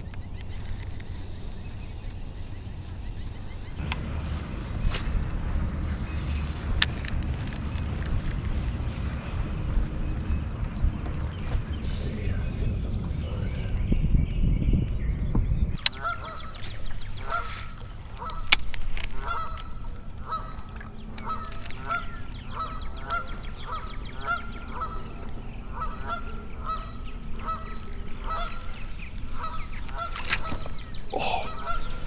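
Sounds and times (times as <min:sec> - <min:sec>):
geese honking: 0:00.0 - 0:03.8, 0:15.8 - 0:32.0.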